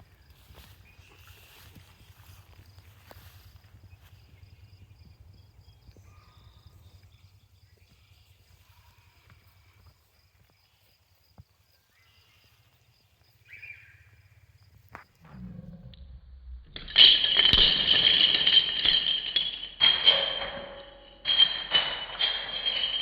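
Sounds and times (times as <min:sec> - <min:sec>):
low rumble: 0:15.1 - 0:19.0.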